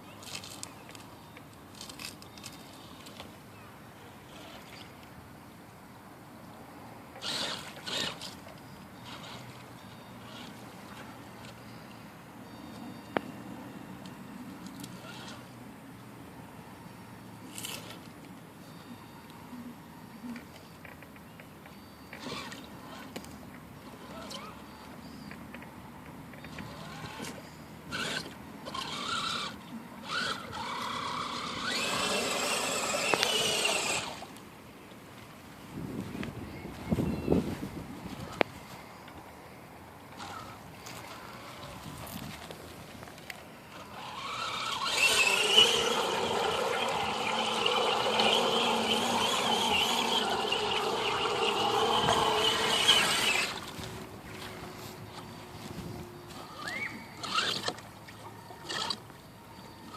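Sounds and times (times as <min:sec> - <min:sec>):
electric motor whining: 0:07.2 - 0:08.3, 0:26.5 - 0:34.3, 0:43.7 - 0:57.8.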